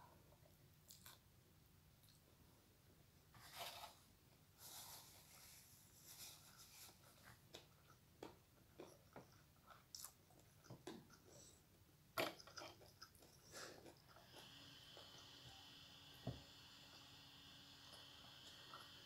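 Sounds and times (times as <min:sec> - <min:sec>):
person chewing food: 0:07.4 - 0:11.6.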